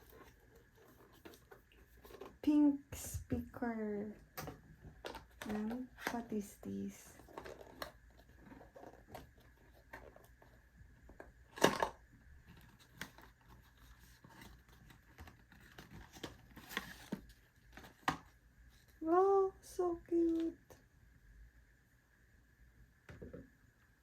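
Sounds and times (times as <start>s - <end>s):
packaging crinkling and tearing: 12.5s - 18.1s.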